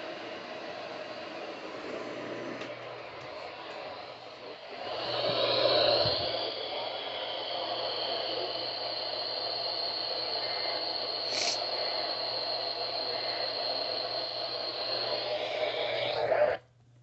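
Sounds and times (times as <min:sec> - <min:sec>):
radio static hiss: 0:02.7 - 0:16.7
thin high whistle: 0:05.0 - 0:16.3.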